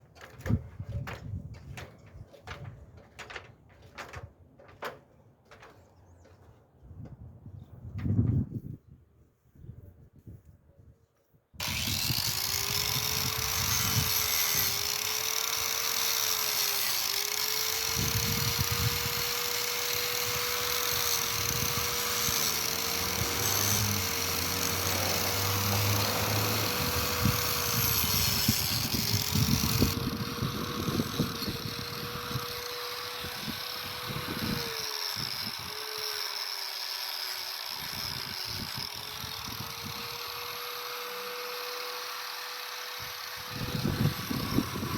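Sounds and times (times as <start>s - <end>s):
angle grinder cutting mortar: 11.6s - 44.9s.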